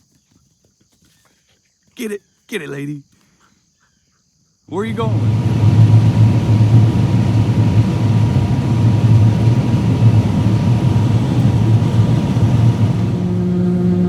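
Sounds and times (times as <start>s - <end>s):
farm machine engine rumbling: 4.7s - 13.6s
steady humming tone: 4.7s - 14.0s.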